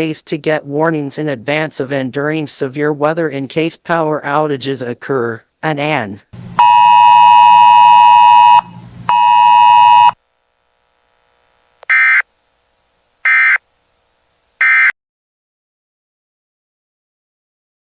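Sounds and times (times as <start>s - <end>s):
loud buzzing alert beeps: 6.6s - 10.2s, 11.9s - 12.2s, 13.3s - 13.6s, 14.6s - 14.9s.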